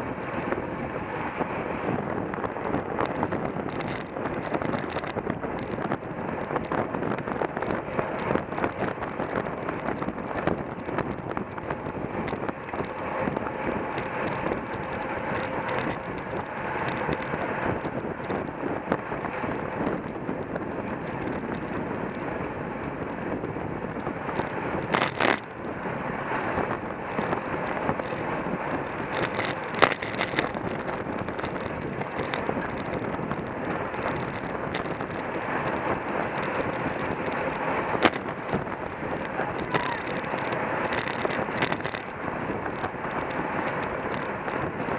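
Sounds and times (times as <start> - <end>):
wind buffeting microphone: 0.0 - 44.9
camera mount rattling: 36.3 - 42.0.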